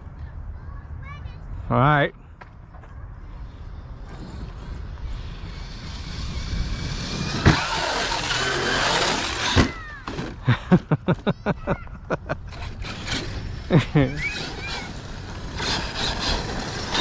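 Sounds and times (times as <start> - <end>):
rc truck motor and tyres: 3.3 - 11.3, 12.4 - 17.0.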